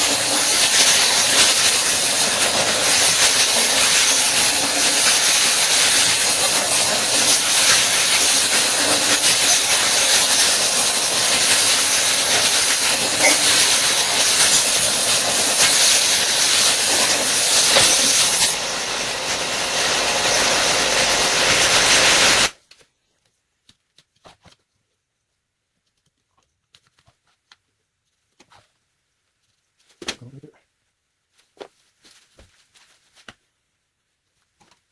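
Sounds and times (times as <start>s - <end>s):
power tool hissing rasp: 0.0s - 22.5s.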